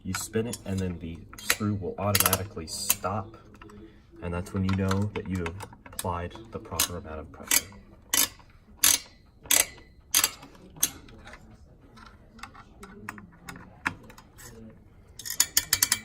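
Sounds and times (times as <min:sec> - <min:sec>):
screwdriver clicking: 0:06.8 - 0:11.0.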